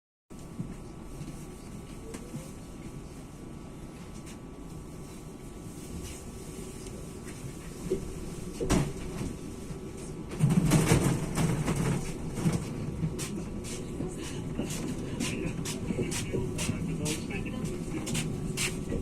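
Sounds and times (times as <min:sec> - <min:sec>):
train running noise: 0:00.4 - 0:19.0
clatter and low hum: 0:10.3 - 0:19.0.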